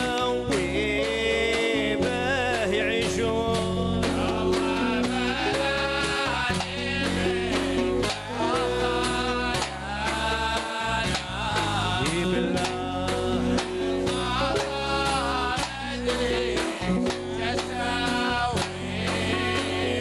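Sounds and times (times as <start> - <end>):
song with singing voice and beat: 0.0 - 20.0.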